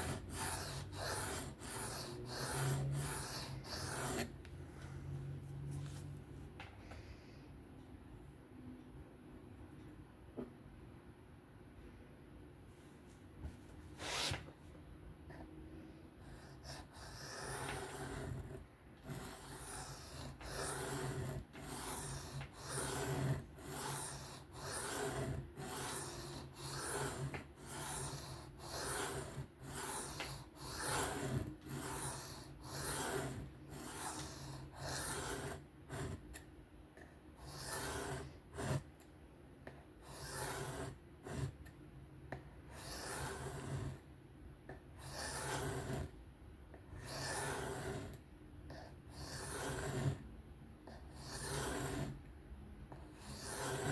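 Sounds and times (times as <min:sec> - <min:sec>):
knife rasping on sharpening stone: 0:00.0 - 0:04.3, 0:19.1 - 0:36.2.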